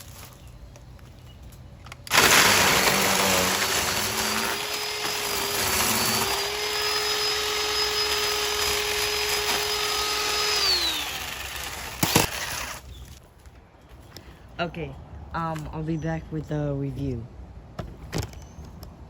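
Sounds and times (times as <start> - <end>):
mini chainsaw cutting wood: 2.1 - 13.2.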